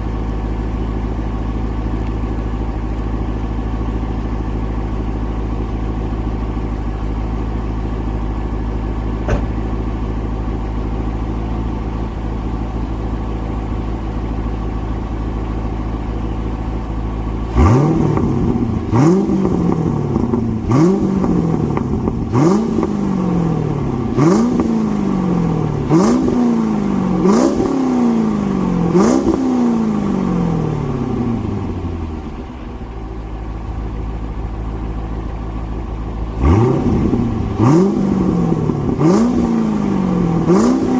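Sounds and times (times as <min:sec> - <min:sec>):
car engine idling and revving: 0:00.0 - 0:40.9.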